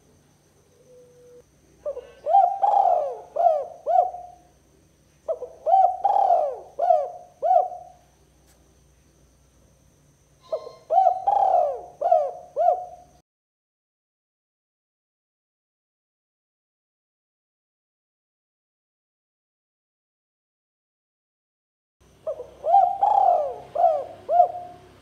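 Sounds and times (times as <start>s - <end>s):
dove cooing: 0.8s - 4.5s, 5.3s - 8.0s, 10.4s - 13.2s, 22.2s - 25.0s.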